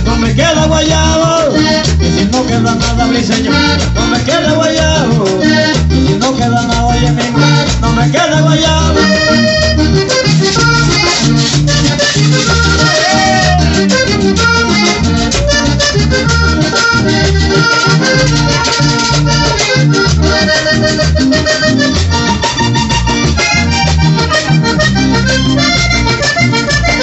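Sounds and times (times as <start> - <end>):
accordion melody: 0.0 - 27.0
pulsing bass line: 0.0 - 27.0
light percussion: 0.1 - 27.0.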